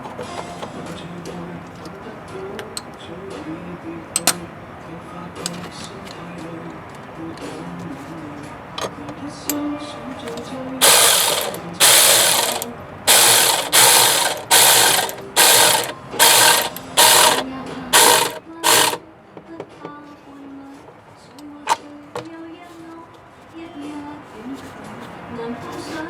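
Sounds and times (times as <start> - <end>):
ratchet wrench clicking: 10.3 - 19.0.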